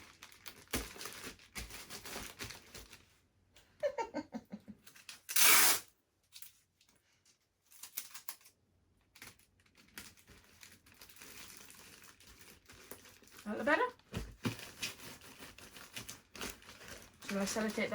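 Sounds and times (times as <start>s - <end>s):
plastic bag crinkling: 0.0s - 3.1s, 7.6s - 17.9s
sticky tape ripping off roll: 5.2s - 5.9s.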